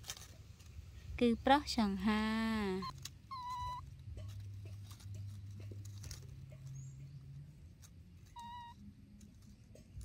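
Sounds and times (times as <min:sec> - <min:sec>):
baby monkey high call: 0:02.7 - 0:04.0, 0:08.3 - 0:08.8.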